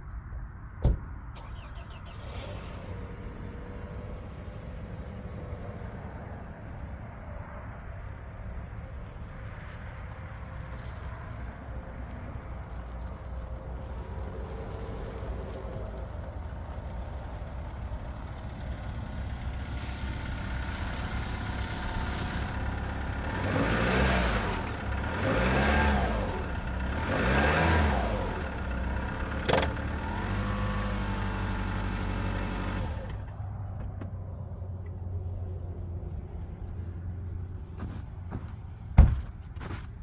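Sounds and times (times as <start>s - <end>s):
pickup truck engine revving: 14.1s - 33.2s.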